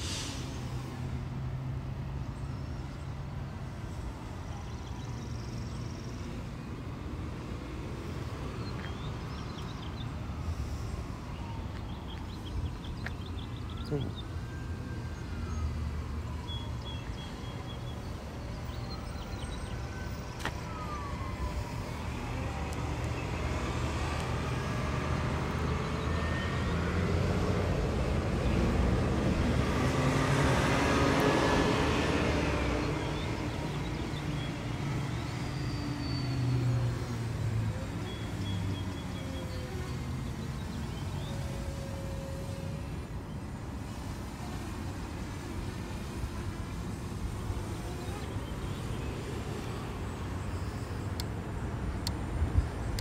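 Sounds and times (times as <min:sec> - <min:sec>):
low traffic hum: 0:00.0 - 0:53.0
car passing: 0:17.7 - 0:42.1.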